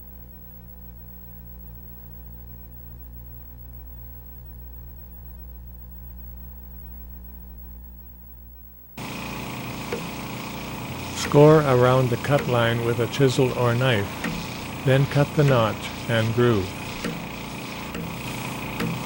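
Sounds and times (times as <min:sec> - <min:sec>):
steady low hum: 0:00.0 - 0:19.0
hissy background noise: 0:08.9 - 0:19.0.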